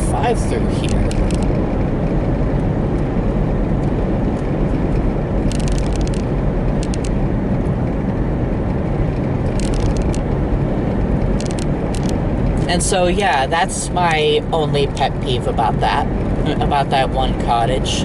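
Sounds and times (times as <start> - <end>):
car road and engine noise: 0.0 - 18.0
sharp ticks: 0.9 - 1.6, 5.5 - 7.2, 9.4 - 10.3, 11.2 - 12.7.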